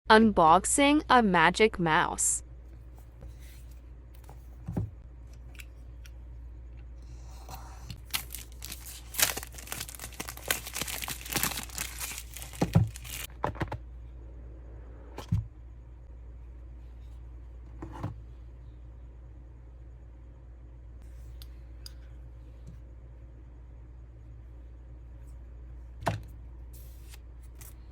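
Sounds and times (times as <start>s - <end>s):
packaging tearing and rustling: 8.0s - 13.3s.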